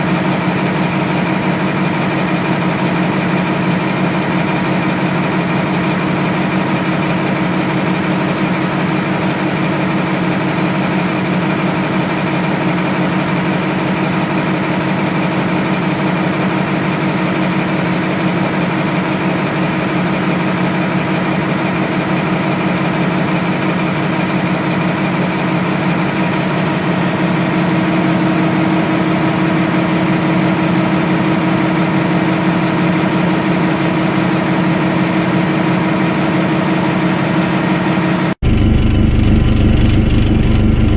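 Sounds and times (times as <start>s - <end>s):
engine idling: 38.4s - 40.9s.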